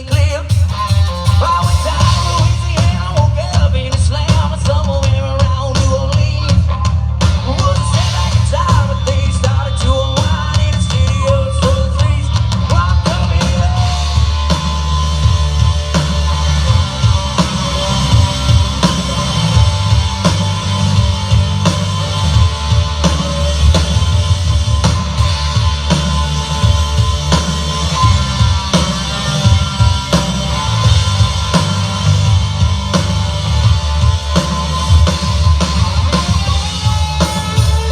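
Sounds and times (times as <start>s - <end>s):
bass guitar: 0.0s - 37.9s
drum kit: 0.0s - 37.9s
electric guitar bending notes: 11.9s - 37.9s.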